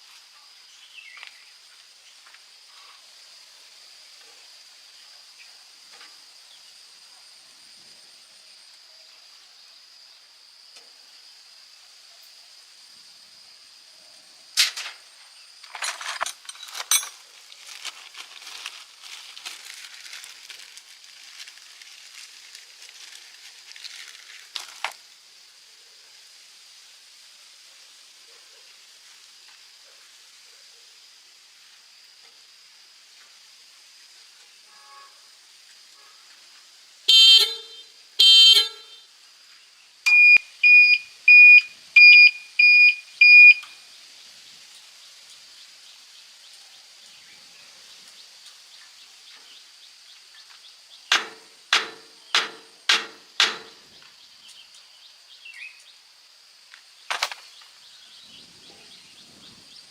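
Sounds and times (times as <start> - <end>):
vehicle horn toots: 34.7 - 35.2, 37.1 - 39.0
short high electronic beeps: 40.1 - 43.7.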